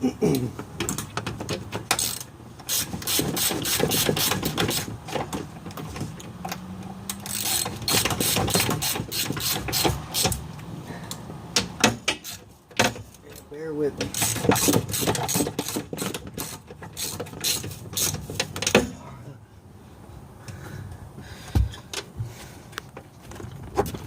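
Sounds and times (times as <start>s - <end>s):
ratchet wrench clicking: 1.9s - 4.9s, 7.1s - 10.4s, 14.0s - 18.5s.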